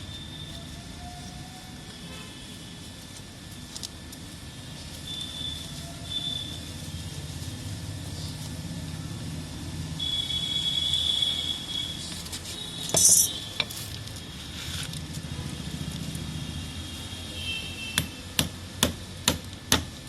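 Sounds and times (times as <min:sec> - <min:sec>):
high squeaks: 0:11.8 - 0:13.6
tool scraping and clinking on pipe: 0:12.8 - 0:13.8.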